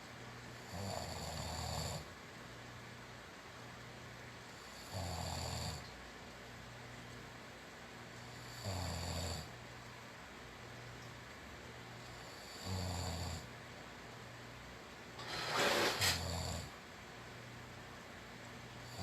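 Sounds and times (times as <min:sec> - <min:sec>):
person snoring loudly: 0:00.7 - 0:02.0, 0:12.4 - 0:13.4, 0:15.2 - 0:16.7.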